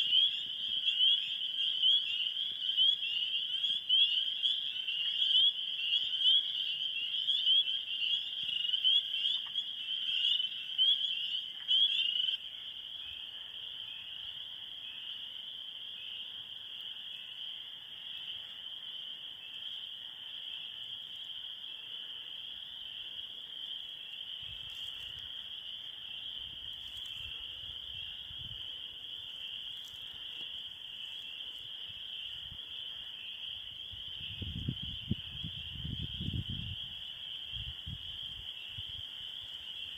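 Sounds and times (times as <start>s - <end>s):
fast-pulsing frog chorus: 0.0s - 13.6s
frogs and insects calling: 0.0s - 39.9s.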